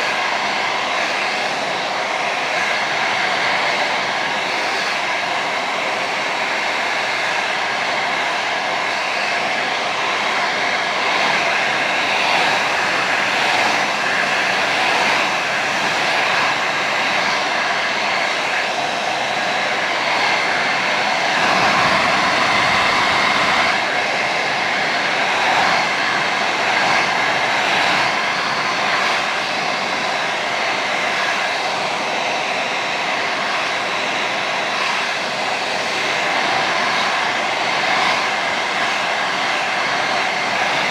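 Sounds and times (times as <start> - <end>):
hair dryer running: 0.0 - 40.9.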